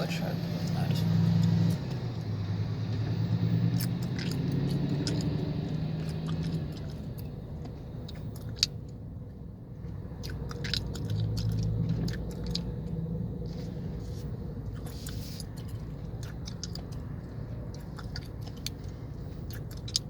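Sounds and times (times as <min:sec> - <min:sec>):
car hum in traffic: 0:00.0 - 0:20.0
gum chewing: 0:03.7 - 0:09.0, 0:09.9 - 0:20.0.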